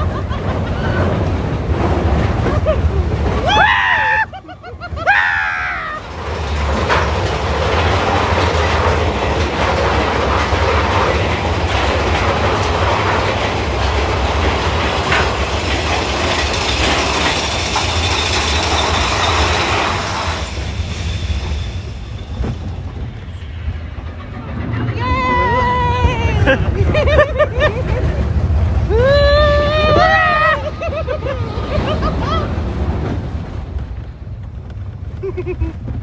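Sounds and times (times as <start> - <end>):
roller coaster rattling on track: 0.0 - 36.0
high wavering squeals: 15.9 - 26.2.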